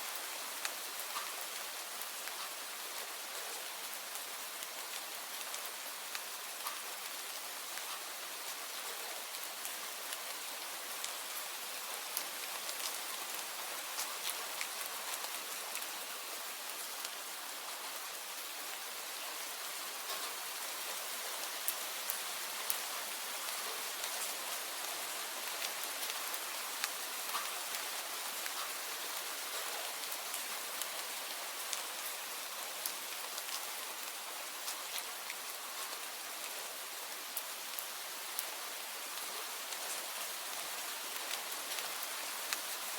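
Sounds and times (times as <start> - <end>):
steady rain hiss: 0.0 - 42.9
raindrops ticking: 25.1 - 28.8.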